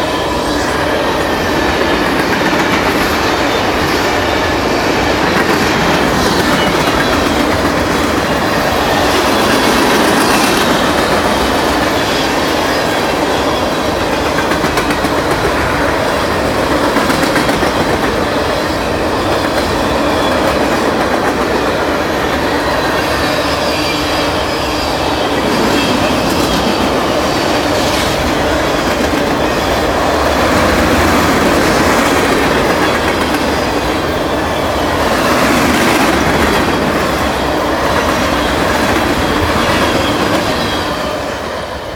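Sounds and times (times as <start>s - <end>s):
freight train rumbling past: 0.0s - 41.9s
wheels clacking over rail joints: 1.8s - 23.0s.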